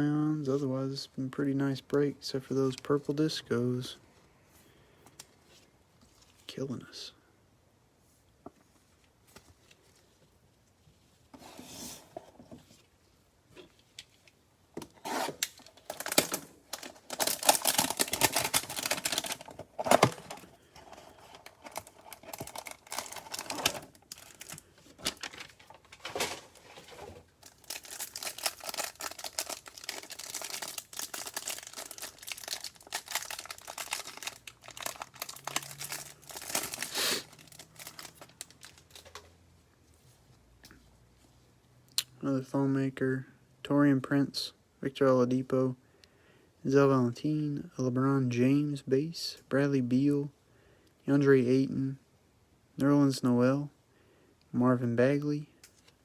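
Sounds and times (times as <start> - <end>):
packaging tearing and rustling: 15.0 - 39.2.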